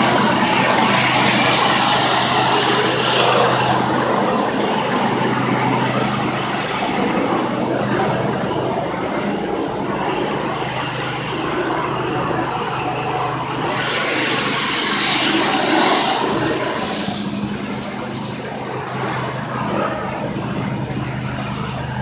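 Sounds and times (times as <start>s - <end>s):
water jet hissing on bricks: 0.0s - 5.4s, 13.4s - 18.4s
pressure washer machine hum: 0.0s - 22.0s.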